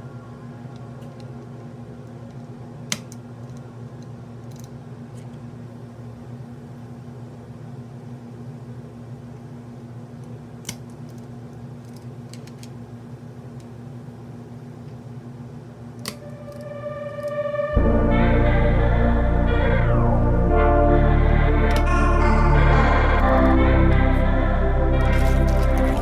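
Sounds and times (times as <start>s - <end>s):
steady low hum: 16.1s - 26.0s.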